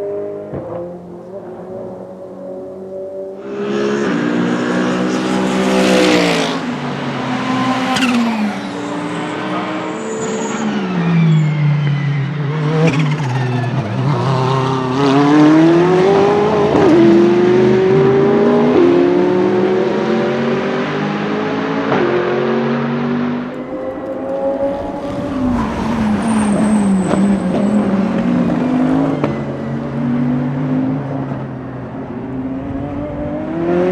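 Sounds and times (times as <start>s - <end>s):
racing car engine revving: 3.4s - 11.5s.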